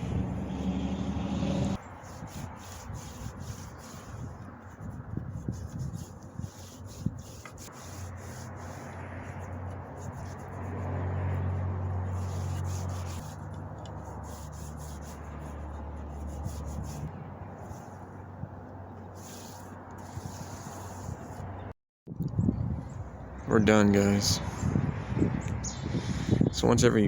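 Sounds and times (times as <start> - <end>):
hand rubbing wood: 0.0 - 21.4.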